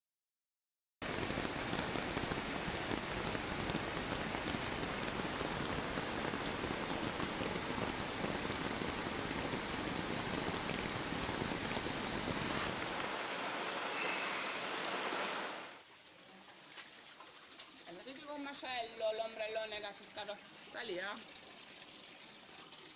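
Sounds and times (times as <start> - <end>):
heavy rain falling: 1.0 - 15.8.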